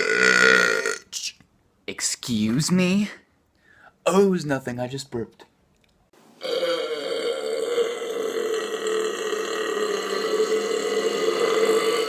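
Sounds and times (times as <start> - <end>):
person belching: 0.0 - 1.1, 6.4 - 12.0.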